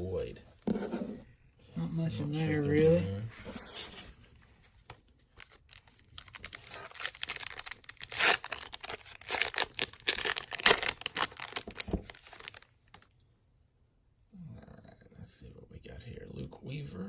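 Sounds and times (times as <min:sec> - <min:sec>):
wrapper ripping and crinkling: 0:05.4 - 0:13.1.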